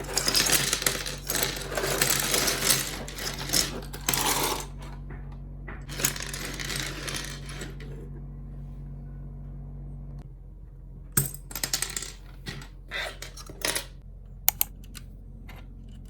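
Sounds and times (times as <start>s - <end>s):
plastic keycaps clattering: 0.0s - 4.9s
low electrical hum: 0.0s - 16.0s.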